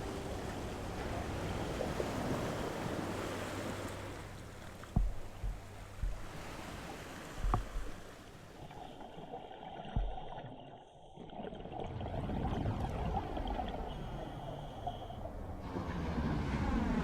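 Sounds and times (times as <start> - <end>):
muffled underwater water noise: 0.0 - 17.0
low thumps: 4.8 - 6.6, 7.4 - 8.0.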